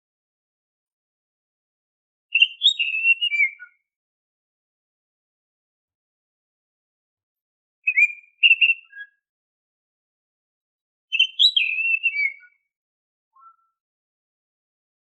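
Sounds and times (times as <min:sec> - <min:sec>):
bird singing whistles: 0:02.3 - 0:03.9, 0:07.8 - 0:09.2, 0:11.1 - 0:12.7, 0:13.4 - 0:13.8.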